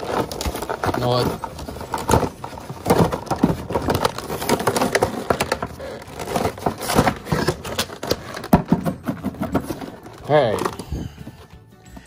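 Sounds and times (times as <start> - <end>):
packaging being torn and crumpled: 0.0 - 8.5.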